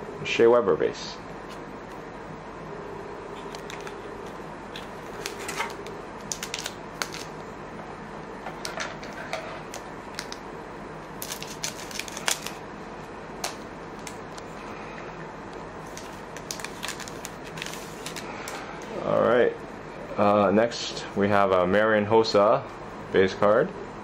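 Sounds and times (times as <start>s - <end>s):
cards and foil wrapper crinkling: 3.4s - 7.4s, 9.0s - 10.4s, 11.1s - 12.6s, 15.9s - 18.6s.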